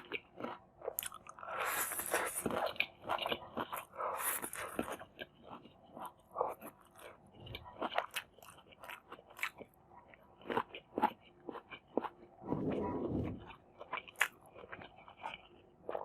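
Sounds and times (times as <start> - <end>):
chewing and crunching: 0.0 - 16.0.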